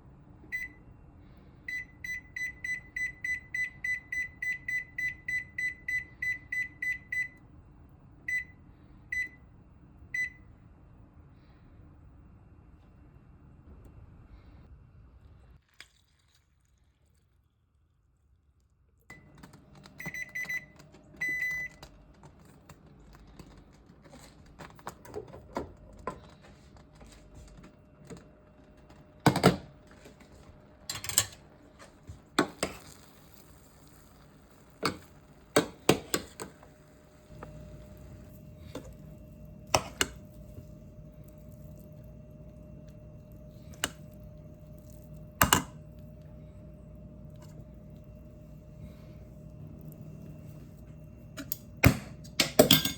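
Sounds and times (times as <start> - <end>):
low appliance hum: 0.0 - 15.7, 17.5 - 52.9
appliance keypad beeping: 0.5 - 0.8, 1.7 - 7.4, 8.3 - 9.4, 10.1 - 10.4, 19.1 - 22.1, 37.3 - 46.4.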